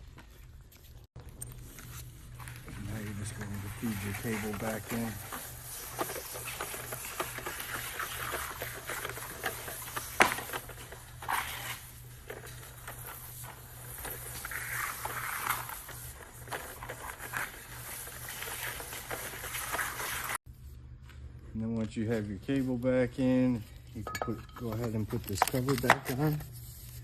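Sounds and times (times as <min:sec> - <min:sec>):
cable scraping in housing: 0:02.3 - 0:20.4.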